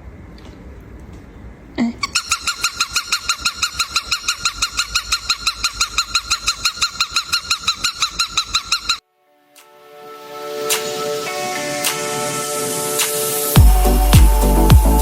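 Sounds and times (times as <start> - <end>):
cockatiel chirping: 2.0 - 9.0.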